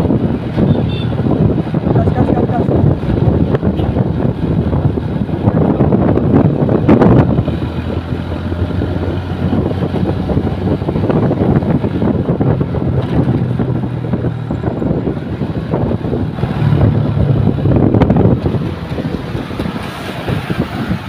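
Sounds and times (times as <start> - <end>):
road traffic passing: 0.0 - 21.0
steady low engine hum: 0.0 - 21.0
wind buffeting microphone: 0.0 - 21.0.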